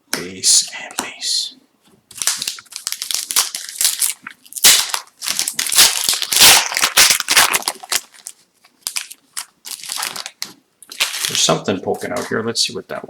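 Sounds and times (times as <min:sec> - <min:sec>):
foil wrapper crinkling and tearing: 0:02.1 - 0:11.6.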